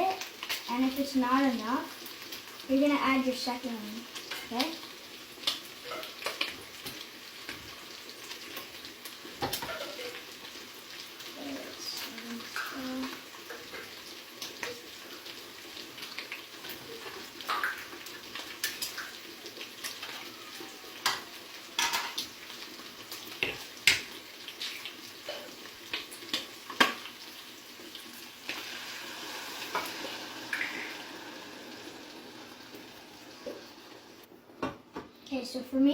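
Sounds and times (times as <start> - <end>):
metal cookware clanking: 21.8 - 22.2.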